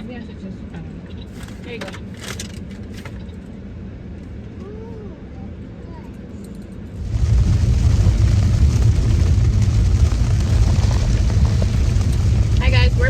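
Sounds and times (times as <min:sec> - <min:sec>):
car interior road rumble: 0:06.9 - 0:13.0.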